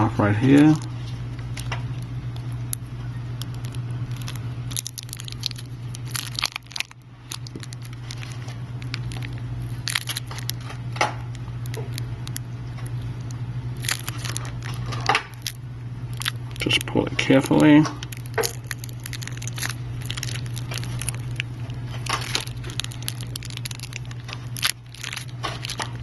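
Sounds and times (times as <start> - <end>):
steady low hum: 0.0 - 26.0
hands crackling and clicking: 3.4 - 10.7, 18.0 - 26.0.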